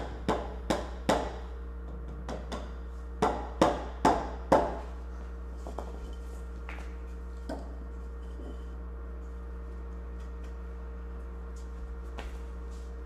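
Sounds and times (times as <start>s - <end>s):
hammer striking wood: 0.0s - 1.4s, 2.3s - 4.8s.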